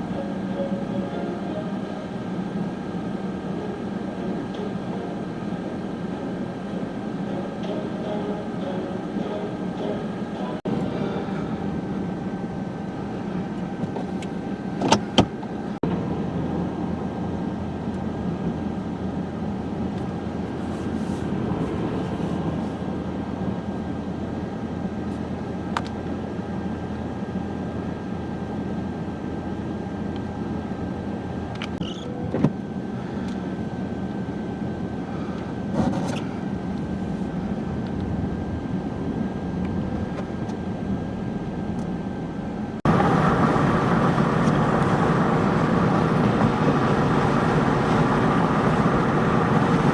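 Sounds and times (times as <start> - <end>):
car running hum: 0.0 - 49.9.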